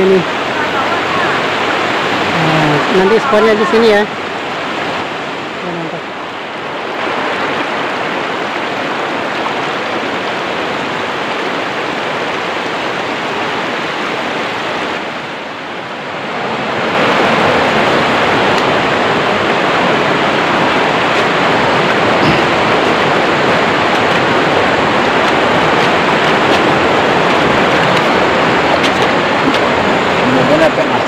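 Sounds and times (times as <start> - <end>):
rushing river water: 0.0 - 31.0.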